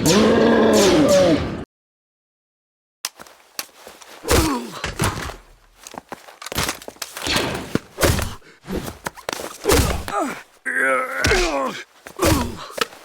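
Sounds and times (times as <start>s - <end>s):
man grunting in pain: 4.3s - 4.9s, 9.6s - 12.8s
thuds and hits: 6.6s - 8.4s.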